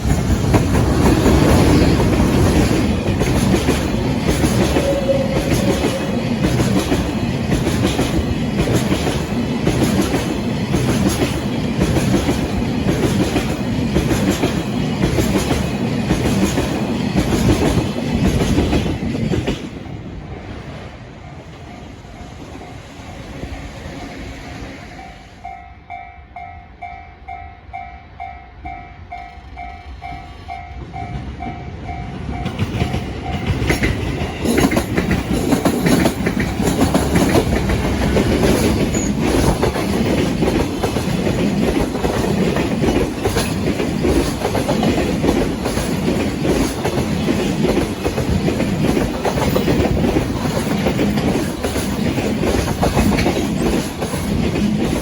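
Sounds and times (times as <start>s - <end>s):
train wheels clattering: 0.0s - 19.9s, 29.6s - 55.0s
train passing: 0.0s - 55.0s
level-crossing warning bell: 1.6s - 7.4s, 25.0s - 35.2s.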